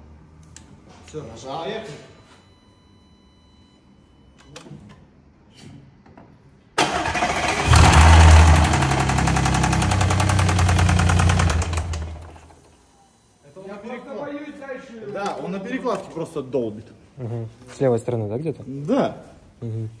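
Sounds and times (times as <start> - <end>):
car engine idling: 6.8 - 12.5
engine knocking: 6.8 - 12.5
starter cranking: 6.8 - 12.5.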